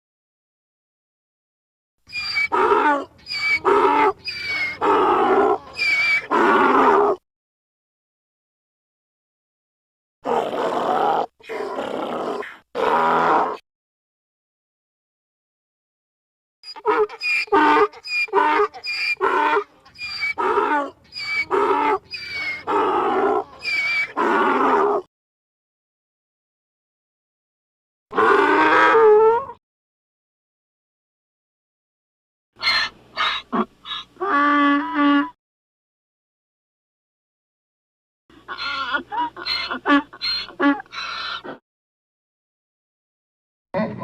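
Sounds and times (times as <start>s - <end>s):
donkey braying: 2.1s - 7.2s, 16.7s - 25.1s, 28.2s - 29.6s, 32.6s - 35.4s, 38.3s - 41.6s.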